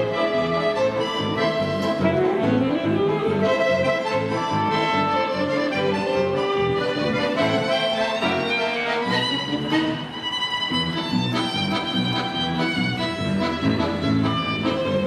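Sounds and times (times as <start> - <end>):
orchestral strings music: 0.0 - 15.0.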